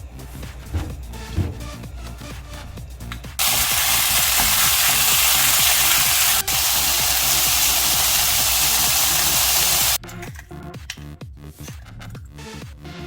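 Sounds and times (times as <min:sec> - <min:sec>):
background music: 0:00.0 - 0:13.0
food sizzling in hot oil: 0:03.4 - 0:10.0.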